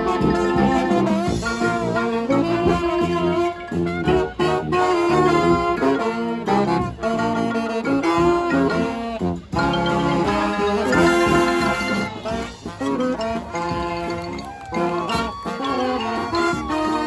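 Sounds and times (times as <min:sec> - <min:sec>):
brass band playing: 0:00.0 - 0:17.0
saxophone: 0:00.0 - 0:17.0.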